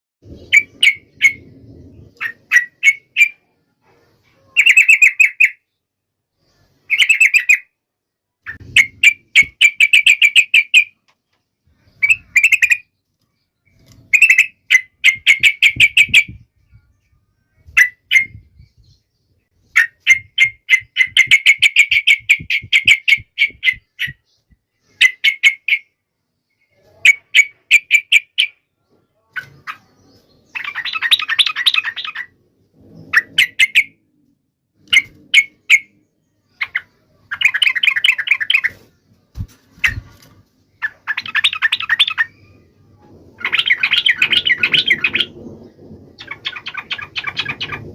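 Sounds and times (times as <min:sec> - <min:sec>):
bird singing chattering phrases: 0:04.4 - 0:05.8, 0:11.7 - 0:13.0, 0:17.6 - 0:34.0, 0:34.9 - 0:39.1, 0:39.7 - 0:42.7, 0:43.3 - 0:47.9.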